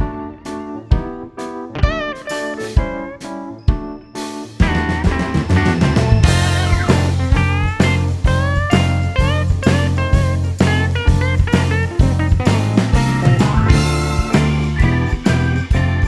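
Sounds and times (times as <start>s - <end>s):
blues-rock guitar lead: 0.0s - 16.0s
drums: 0.0s - 16.0s
bass line: 4.6s - 16.0s.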